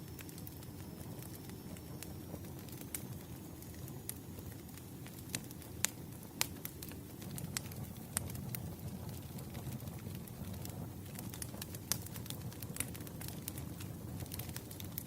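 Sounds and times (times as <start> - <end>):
fire crackling and popping: 0.0 - 15.0.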